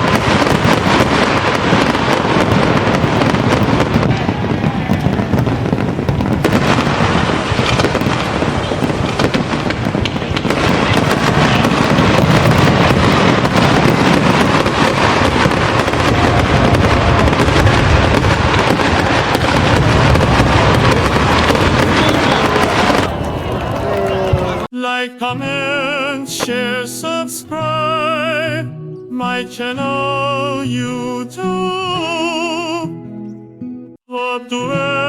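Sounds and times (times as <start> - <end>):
fireworks bangs and crackling: 0.0 - 24.7.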